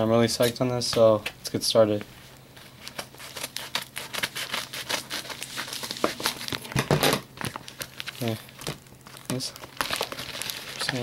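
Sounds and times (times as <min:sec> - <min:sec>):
packaging crinkling and tearing: 0:02.6 - 0:11.0.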